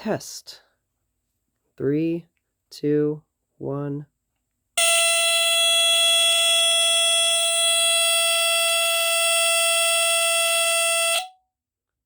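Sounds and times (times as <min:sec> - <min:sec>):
smoke alarm tone: 0:04.8 - 0:11.4.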